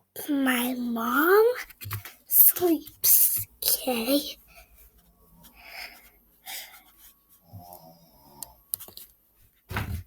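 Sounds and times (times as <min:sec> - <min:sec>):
woman breathing heavily: 0:04.4 - 0:08.2.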